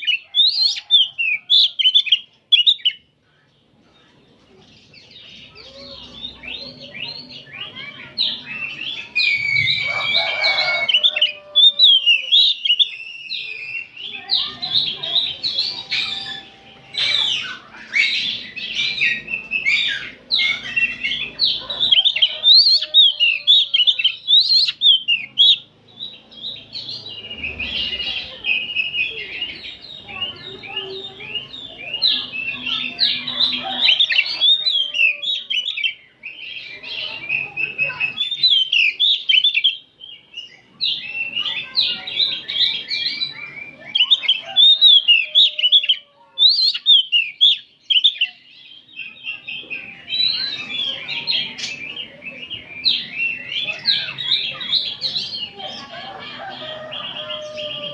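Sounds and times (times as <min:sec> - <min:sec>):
birds chorus of chirps and trills: 0:00.0 - 0:57.9.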